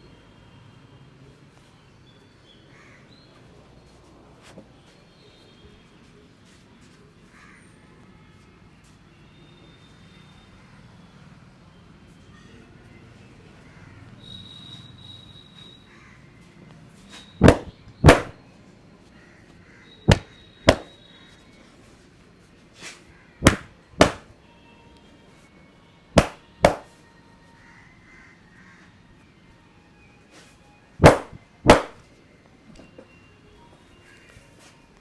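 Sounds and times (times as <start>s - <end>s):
hands slapping during massage: 17.4s - 18.4s, 20.1s - 20.9s, 23.4s - 24.3s, 26.2s - 26.9s, 31.0s - 32.0s.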